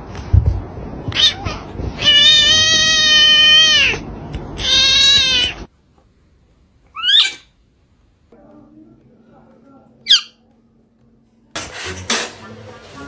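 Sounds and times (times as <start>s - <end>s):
cat yowling: 1.1s - 4.0s, 4.6s - 5.7s, 6.9s - 7.5s.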